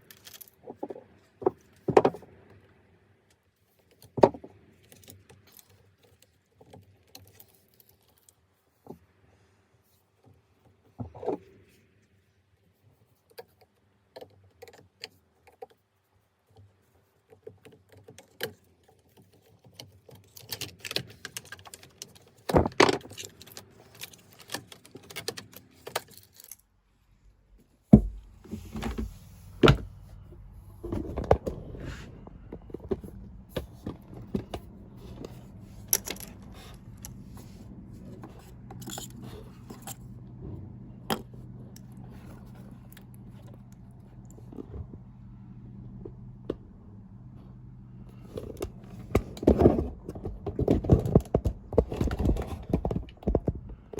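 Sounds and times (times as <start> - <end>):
low machine hum: 26.8 - 53.9.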